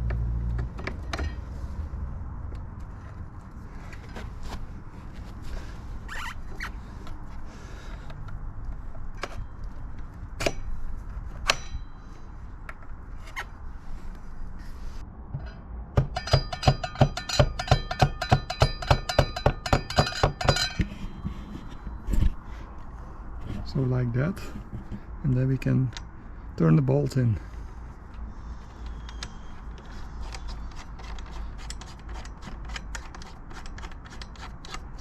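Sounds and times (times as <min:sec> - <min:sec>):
ringing metal clicks: 0:11.4 - 0:12.0, 0:15.4 - 0:20.8
metallic knocks: 0:15.3 - 0:20.9.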